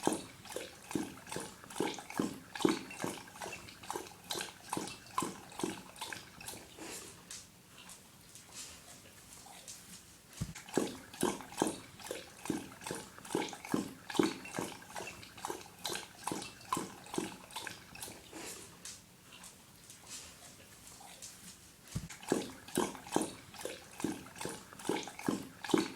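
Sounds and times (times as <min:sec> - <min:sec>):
water sloshing: 0:00.0 - 0:07.3, 0:10.3 - 0:18.9, 0:21.9 - 0:25.9
dog lapping water: 0:00.0 - 0:20.7, 0:21.9 - 0:25.9.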